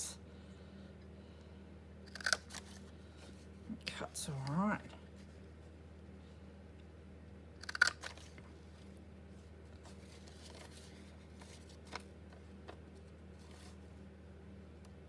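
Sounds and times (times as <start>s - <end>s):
low steady hum: 0.0s - 15.0s
paper being handled: 9.9s - 12.1s.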